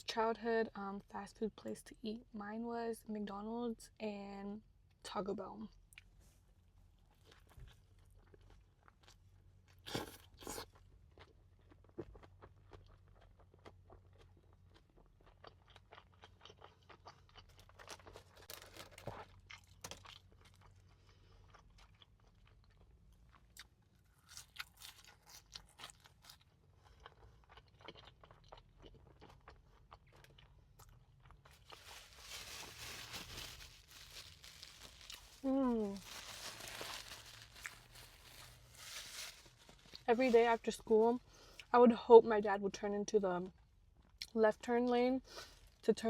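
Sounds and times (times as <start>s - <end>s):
person chewing and crunching food: 7.0s - 41.7s.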